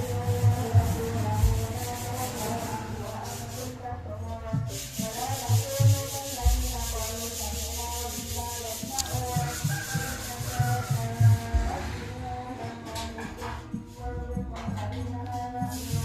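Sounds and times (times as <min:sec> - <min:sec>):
sandpaper rasping on steel: 0:00.0 - 0:03.9, 0:04.7 - 0:12.2, 0:15.7 - 0:16.0.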